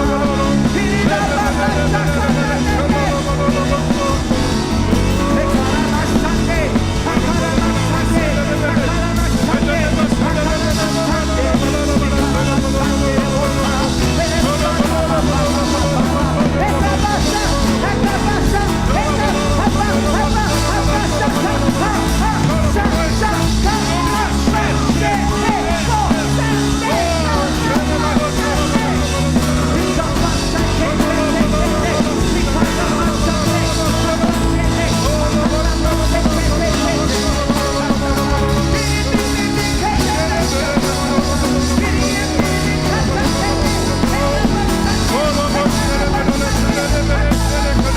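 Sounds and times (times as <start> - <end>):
band playing worship music: 0.0 - 47.9
bass guitar: 0.0 - 47.9
voices singing: 0.0 - 47.9.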